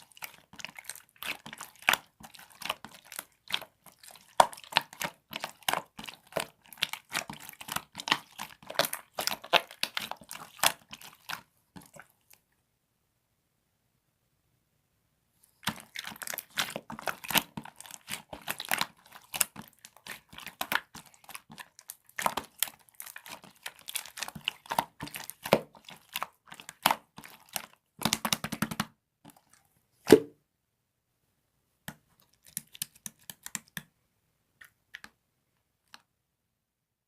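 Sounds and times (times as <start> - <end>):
slime squished by hand: 0.0 - 12.4, 15.6 - 30.3.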